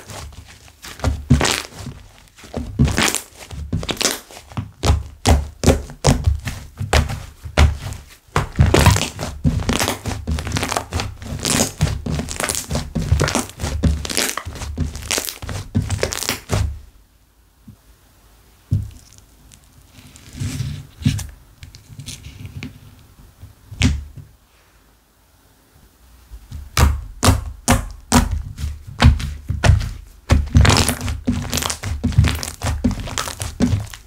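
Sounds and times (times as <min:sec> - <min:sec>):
hands squishing slime: 0:00.0 - 0:16.7, 0:26.7 - 0:34.0.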